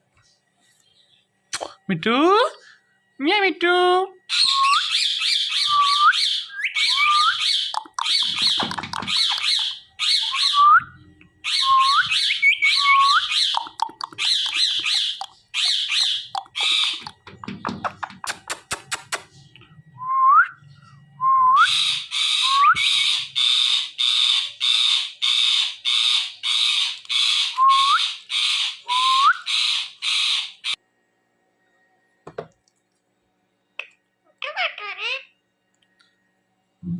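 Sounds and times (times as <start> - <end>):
parrot squawking: 4.3 - 10.8, 11.4 - 19.2, 21.6 - 30.8, 34.4 - 35.3
parrot clicks: 13.4 - 15.4, 16.3 - 19.3.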